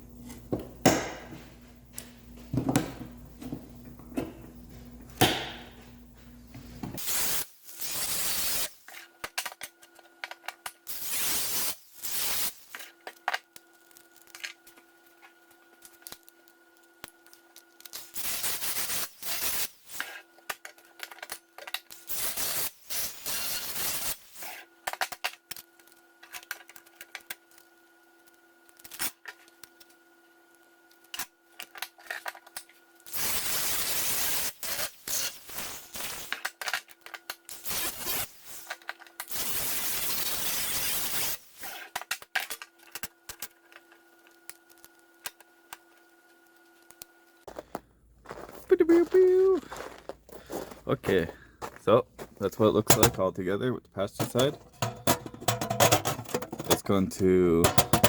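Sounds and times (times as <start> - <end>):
hand tools on aluminum sheet: 17.8 - 25.4, 31.1 - 45.8, 52.5 - 53.3, 54.1 - 58.0.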